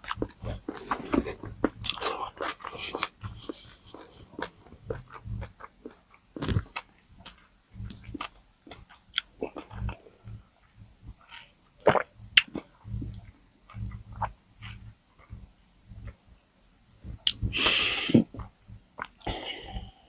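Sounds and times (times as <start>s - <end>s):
wet chewing and biting: 0.0s - 15.4s.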